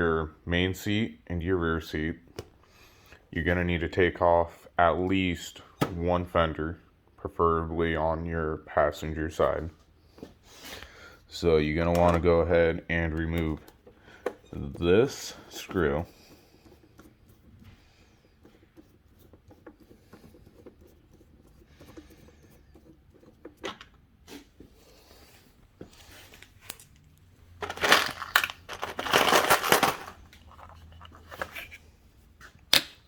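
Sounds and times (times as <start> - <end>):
rustling and rattling: 13.6 - 32.0
tools clicking and scraping: 25.9 - 33.0.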